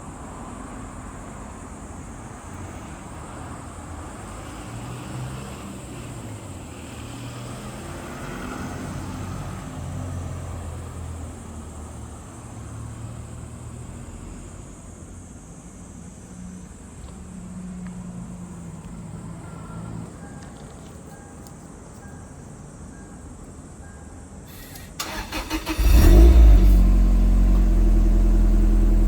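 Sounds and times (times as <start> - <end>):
car engine running: 25.6 - 29.0.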